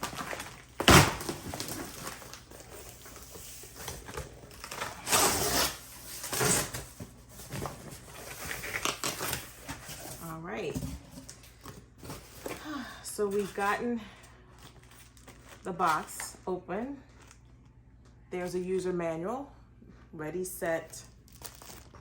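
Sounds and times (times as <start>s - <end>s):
cardboard box tearing open: 0.0s - 10.3s.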